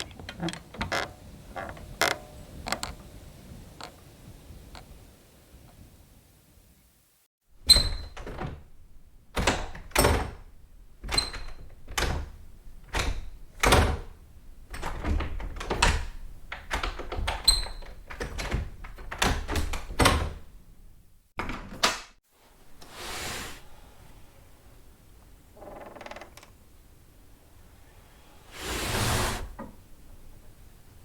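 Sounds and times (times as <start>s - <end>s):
door latch clicks and knocks: 7.7s - 20.5s
object dragged over wood floor: 22.8s - 23.8s, 28.5s - 29.6s.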